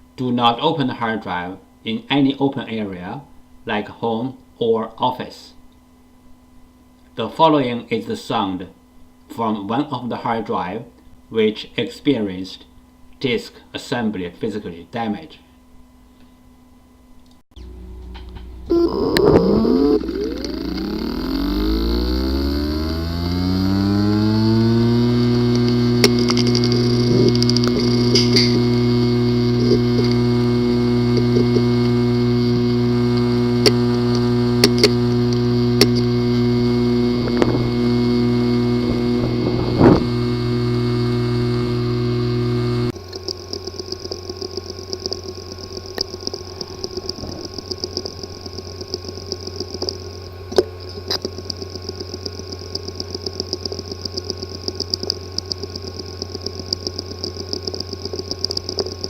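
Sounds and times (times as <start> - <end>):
hard drive whir with whine: 0.0 - 59.0
hard drive buzzing and clicking: 17.6 - 59.0
small ticks: 19.0 - 39.1, 40.0 - 59.0.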